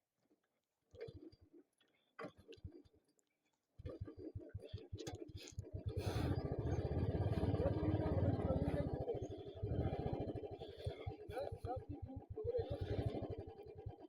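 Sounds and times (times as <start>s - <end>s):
motorcycle engine stuttering: 5.7s - 14.0s.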